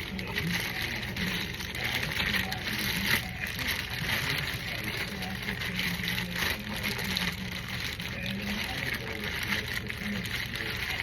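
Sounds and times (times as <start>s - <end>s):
food being chewed: 0.0s - 11.0s.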